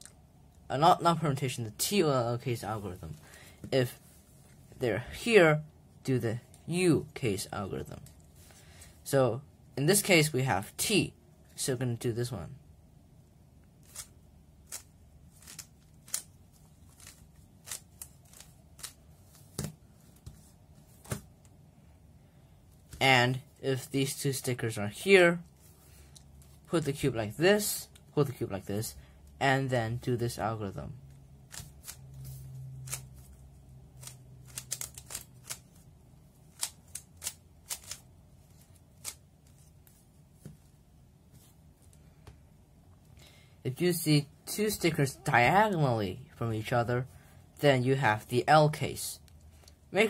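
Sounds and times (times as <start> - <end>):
puzzle cube plastic clicking: 13.8 - 16.3, 34.0 - 35.8, 36.5 - 38.0.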